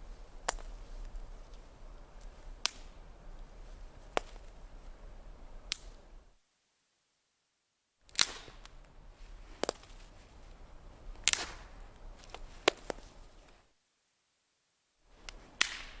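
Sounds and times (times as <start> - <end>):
twigs snapping: 0.2 - 5.0, 5.6 - 6.1, 8.1 - 13.6, 15.2 - 16.0.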